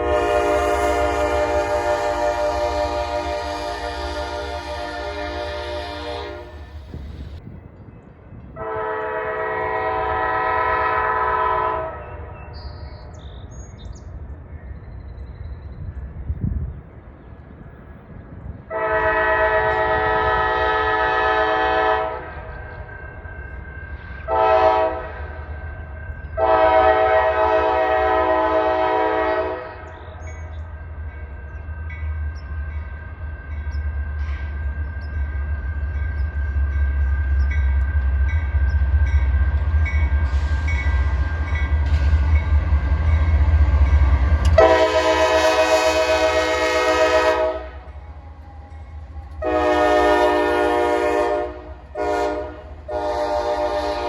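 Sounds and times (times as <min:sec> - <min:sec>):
locomotive air horn blasts: 0:00.0 - 0:07.1, 0:08.6 - 0:12.3, 0:18.7 - 0:22.4, 0:24.2 - 0:25.4, 0:26.4 - 0:29.9, 0:43.6 - 0:48.0, 0:49.4 - 0:54.0
passing train rumble: 0:00.0 - 0:54.0.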